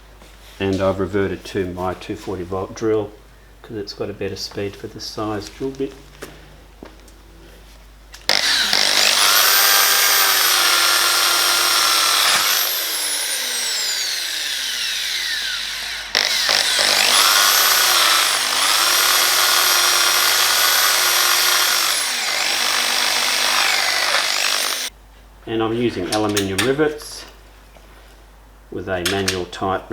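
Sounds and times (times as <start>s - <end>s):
electric drill whining: 8.3s - 24.9s.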